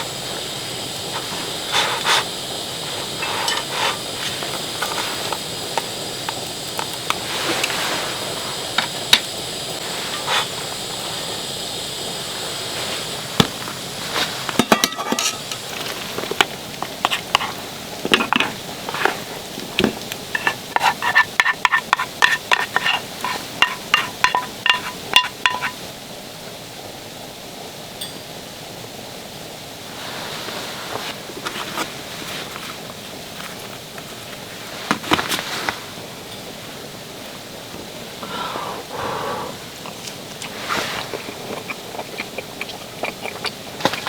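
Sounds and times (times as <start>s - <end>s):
sharp ringing clinks: 28.0s - 28.3s.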